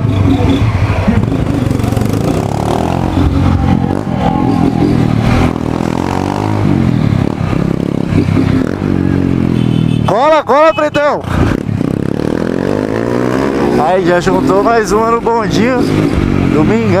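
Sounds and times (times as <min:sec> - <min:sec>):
motorcycle engine running: 0:00.0 - 0:10.1.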